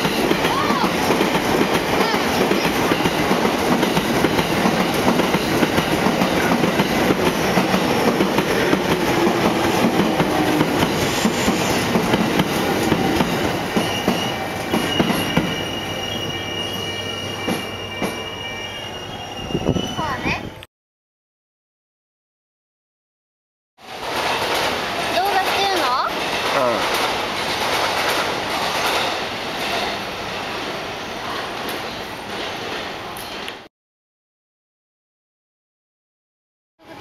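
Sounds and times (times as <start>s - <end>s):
electric train passing: 0.0s - 20.6s, 23.8s - 33.7s
high wheel squeal: 12.6s - 20.5s
wheels clacking over rail joints: 23.8s - 30.0s.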